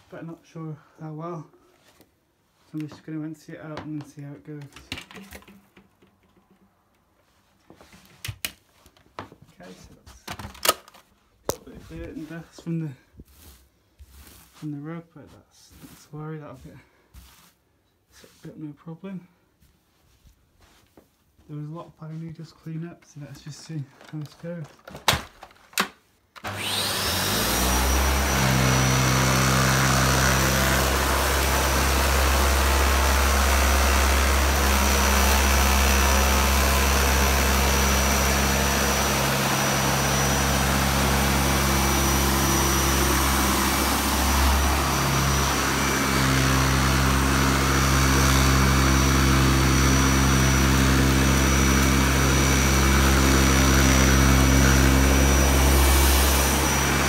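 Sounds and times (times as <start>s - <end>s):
vacuum cleaner whining: 26.4s - 57.0s.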